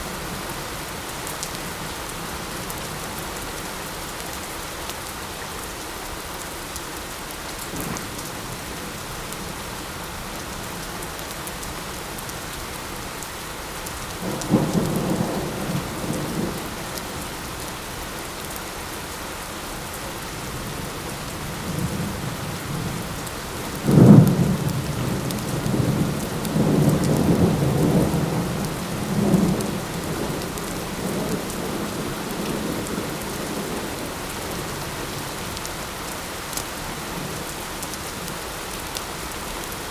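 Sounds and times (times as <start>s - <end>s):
light rain: 0.0s - 39.9s.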